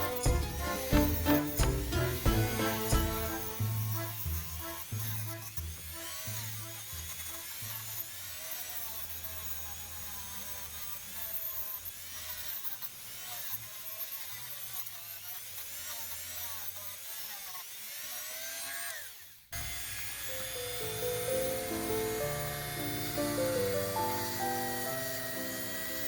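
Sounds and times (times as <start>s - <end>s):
background music with bass line: 0.0s - 4.8s
power tool motor whining: 0.0s - 26.0s.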